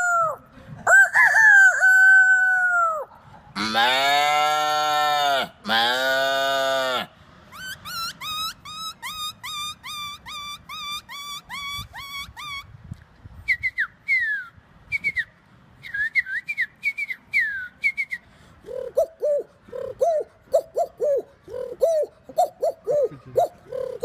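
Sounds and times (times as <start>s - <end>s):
man whistling bird calls: 7.5s - 12.7s, 13.4s - 24.0s.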